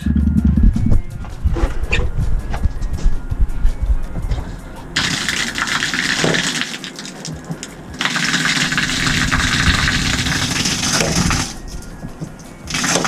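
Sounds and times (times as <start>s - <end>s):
shower head spraying water: 0.6s - 13.0s.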